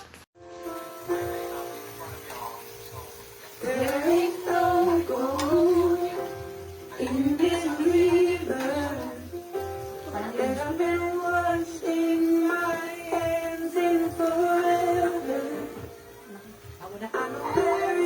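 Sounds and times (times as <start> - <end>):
person singing long notes: 3.6 - 18.0.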